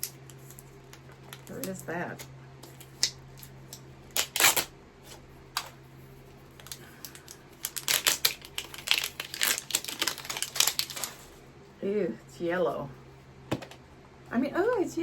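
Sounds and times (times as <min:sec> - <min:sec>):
plastic packaging crinkling: 0:02.6 - 0:04.7, 0:06.5 - 0:11.4.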